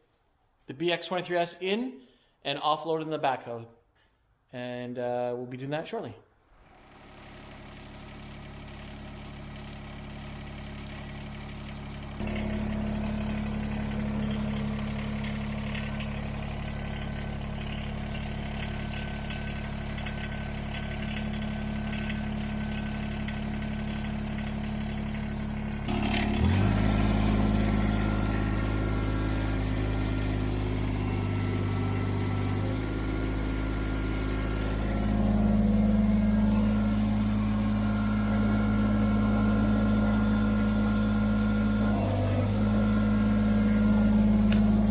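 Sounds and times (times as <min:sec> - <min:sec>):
tractor diesel engine running: 0:06.7 - 0:44.9.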